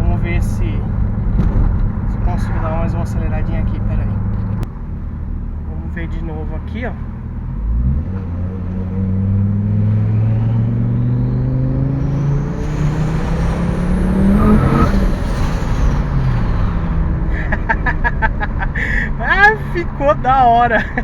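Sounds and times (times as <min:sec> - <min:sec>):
turbocharged engine accelerating: 0:00.0 - 0:21.0
rising turbo whistle: 0:10.1 - 0:16.4.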